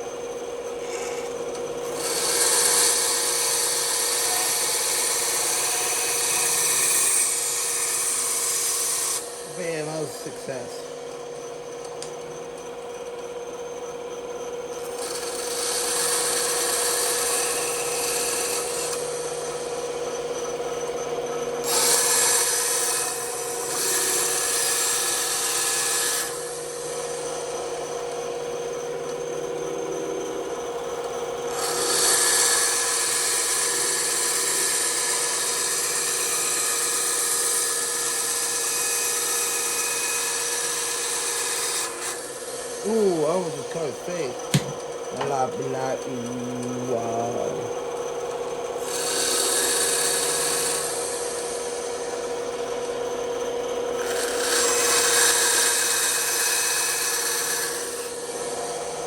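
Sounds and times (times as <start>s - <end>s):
bandsaw humming: 0.0s - 59.0s
blade cutting wood hiss: 31.6s - 47.5s, 54.1s - 59.0s.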